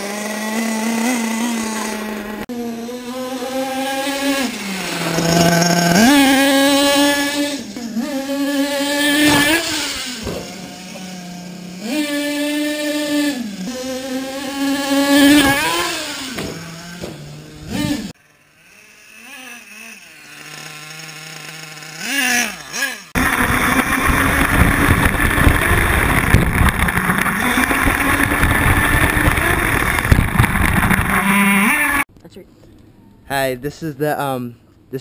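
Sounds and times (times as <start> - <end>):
rc car engine revving: 0.0 - 32.1
rushing noise: 23.2 - 32.0.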